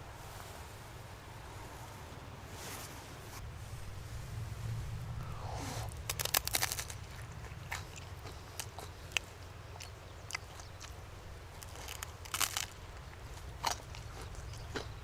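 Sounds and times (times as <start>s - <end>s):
chewing crunchy bread: 5.9s - 15.0s.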